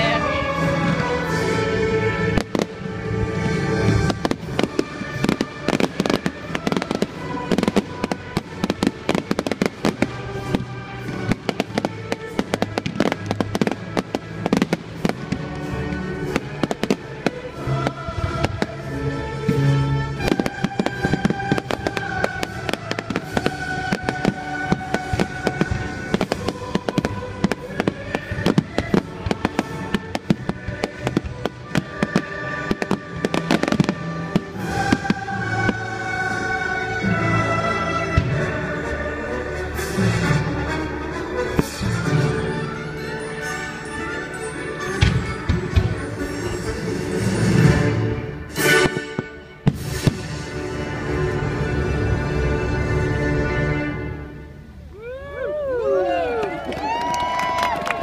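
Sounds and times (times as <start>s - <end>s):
fireworks bangs and crackles: 0.0s - 37.0s, 38.0s - 38.8s, 41.4s - 42.6s, 44.4s - 51.6s
music through loudspeakers: 0.0s - 54.9s.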